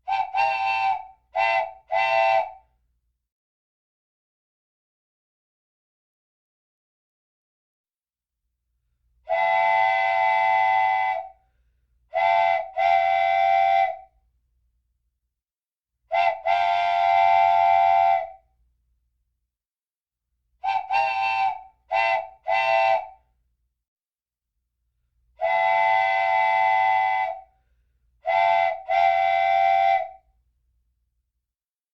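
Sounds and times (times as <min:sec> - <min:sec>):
wooden train whistle blasts: 0:00.0 - 0:02.6, 0:09.3 - 0:11.4, 0:12.1 - 0:14.2, 0:16.1 - 0:18.5, 0:20.6 - 0:23.2, 0:25.4 - 0:27.6, 0:28.2 - 0:30.3.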